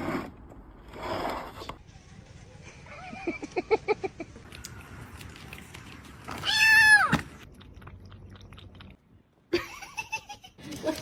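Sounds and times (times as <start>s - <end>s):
cat meowing: 6.3s - 7.2s.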